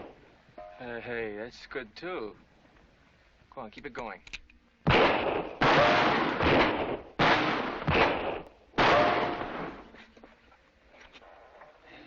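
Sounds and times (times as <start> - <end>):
revolver shots with echo: 4.9 - 9.9.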